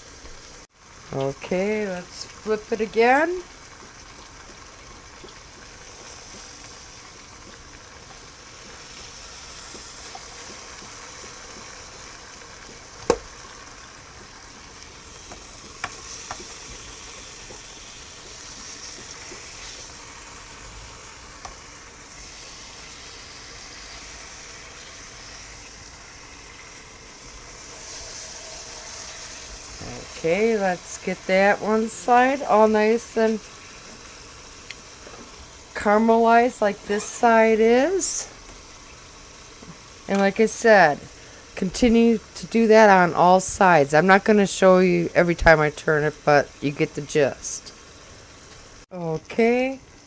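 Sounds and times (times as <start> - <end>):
meat sizzling in a pot: 0.0 - 50.0.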